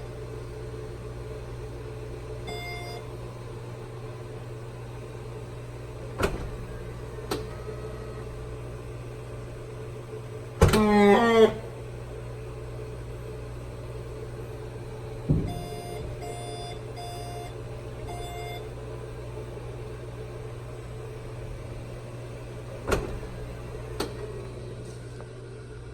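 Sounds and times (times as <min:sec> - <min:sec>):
thump: 0:15.3 - 0:15.6.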